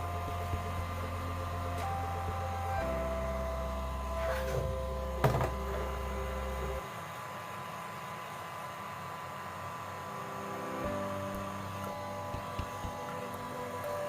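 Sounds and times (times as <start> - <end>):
slow chords over low bass: 0.0 - 6.8, 10.5 - 14.0
faint hum: 0.0 - 14.0.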